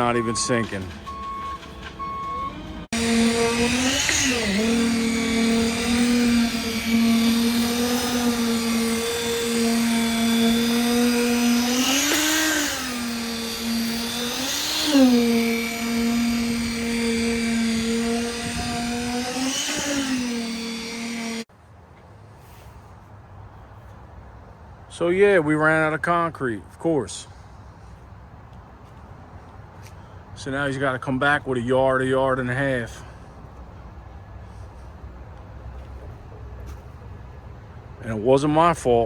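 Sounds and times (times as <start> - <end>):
truck reversing beeps: 0.0 - 2.9
truck engine whining under load: 0.0 - 21.5, 27.3 - 38.0.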